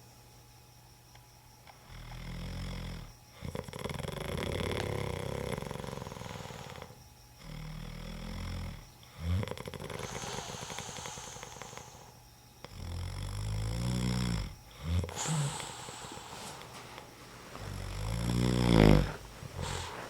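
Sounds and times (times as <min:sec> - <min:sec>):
man snoring: 0:01.8 - 0:16.8, 0:17.5 - 0:20.0.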